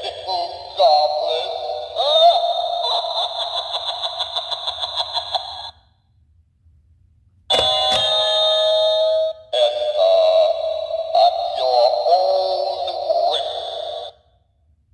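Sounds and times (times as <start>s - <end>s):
toy click: 7.5s - 8.4s.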